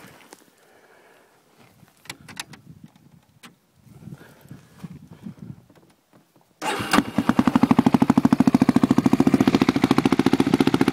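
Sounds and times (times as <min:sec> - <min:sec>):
engine starting and idling: 0:06.6 - 0:10.9.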